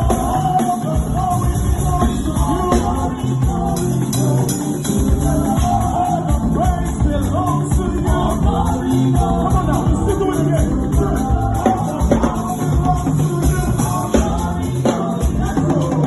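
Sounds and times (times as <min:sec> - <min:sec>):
gospel band playing: 0:00.0 - 0:16.0
people singing: 0:00.0 - 0:16.0.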